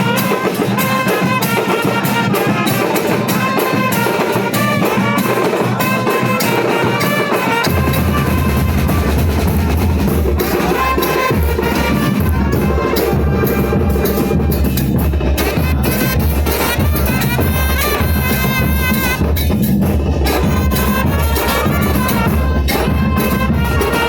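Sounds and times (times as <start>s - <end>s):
music with brass and drums: 0.0s - 24.0s
heavy bass line: 7.6s - 24.0s.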